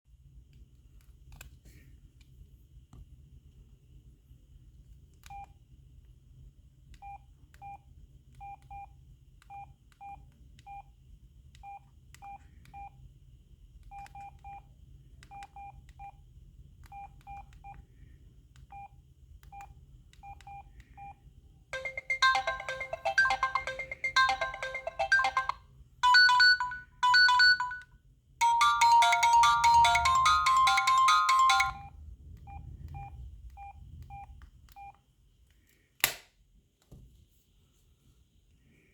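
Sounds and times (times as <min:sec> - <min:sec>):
short high phone beeps: 0:21.8 - 0:27.8
phone ringtone melody: 0:21.8 - 0:31.9.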